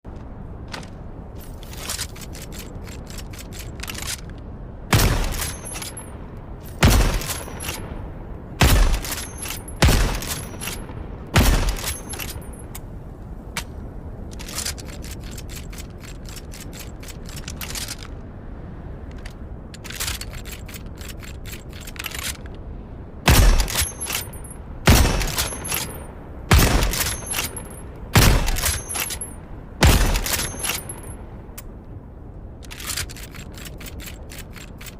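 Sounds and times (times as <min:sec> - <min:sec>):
rifle shots: 0:06.8 - 0:07.9, 0:08.6 - 0:10.6, 0:11.4 - 0:12.2, 0:23.3 - 0:24.2, 0:24.9 - 0:25.9, 0:26.5 - 0:27.6, 0:28.2 - 0:30.7.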